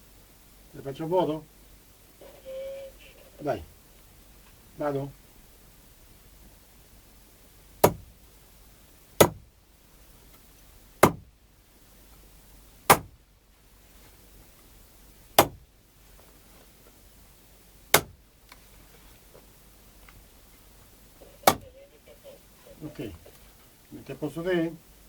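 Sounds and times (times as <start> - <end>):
sharp hard prop hits: 7.8 - 8.1, 11.0 - 11.3, 12.9 - 13.2, 15.4 - 15.6, 17.9 - 18.2.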